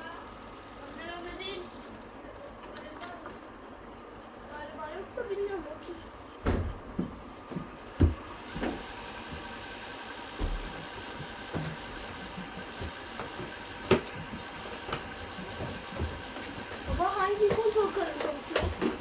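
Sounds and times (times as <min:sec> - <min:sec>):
video player mechanical hum: 0:00.0 - 0:19.0
sharp clicks and knocks: 0:10.3 - 0:19.0.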